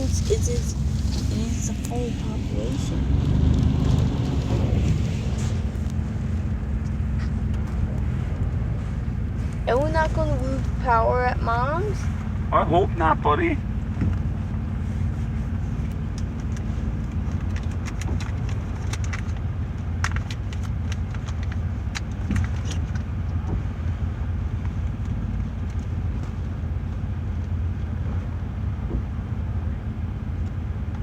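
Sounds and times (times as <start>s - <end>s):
rain striking car: 0.0s - 6.2s
car road rumble: 0.0s - 31.0s.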